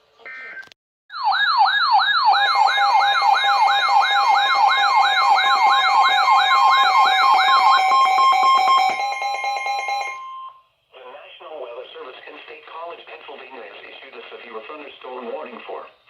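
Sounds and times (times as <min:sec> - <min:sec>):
falling siren sweeps: 0:01.1 - 0:10.5
steady alert tones: 0:01.2 - 0:10.6.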